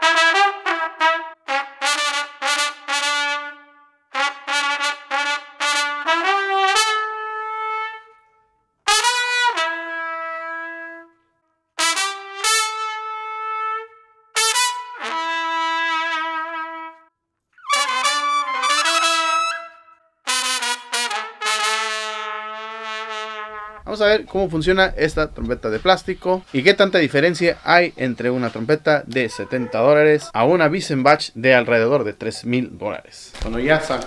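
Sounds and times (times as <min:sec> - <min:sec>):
trumpet playing a melody: 0:00.0 - 0:24.1.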